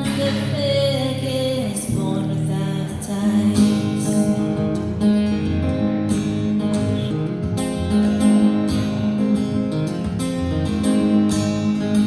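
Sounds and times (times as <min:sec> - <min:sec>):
person singing: 0:00.0 - 0:04.4
acoustic guitar strumming: 0:00.0 - 0:12.0.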